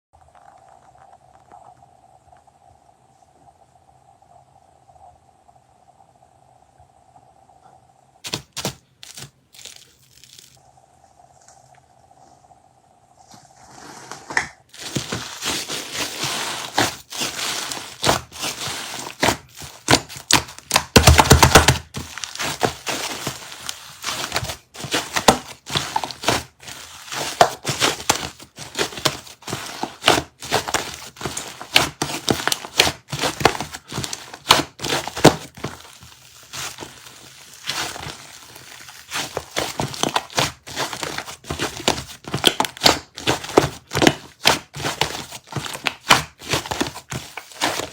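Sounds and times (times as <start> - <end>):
slime crackling and popping: 8.2 - 10.6, 14.7 - 47.9.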